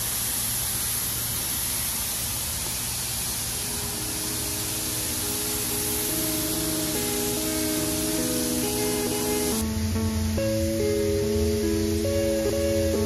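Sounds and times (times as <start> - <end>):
hiss of compressed air: 0.0 - 9.6.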